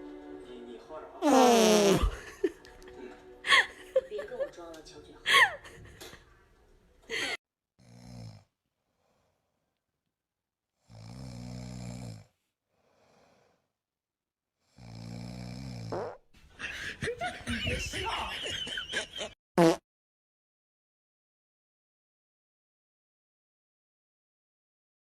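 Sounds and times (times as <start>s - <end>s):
long low rasping snores: 7.8s - 9.4s, 10.8s - 13.7s, 14.6s - 16.0s.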